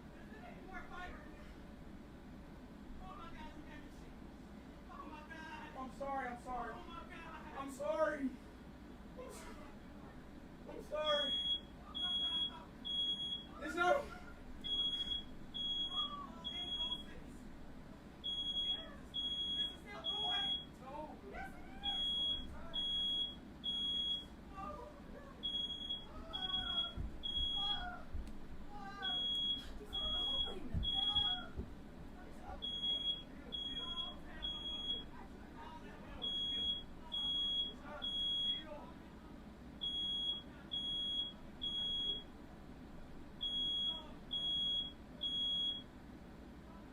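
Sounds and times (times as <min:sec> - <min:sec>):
smoke alarm beeping: 0:11.0 - 0:13.6, 0:14.6 - 0:17.2, 0:18.2 - 0:20.8, 0:21.8 - 0:24.3, 0:25.4 - 0:27.9, 0:29.0 - 0:31.6, 0:32.6 - 0:35.2, 0:36.2 - 0:38.7, 0:39.8 - 0:42.3, 0:43.4 - 0:45.9.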